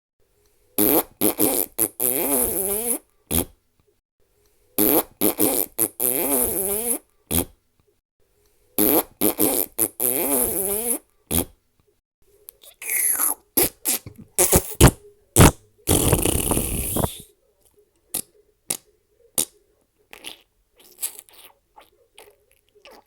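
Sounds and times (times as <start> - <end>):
fart sound effect: 0.8 - 3.5, 4.8 - 7.5, 12.9 - 17.2.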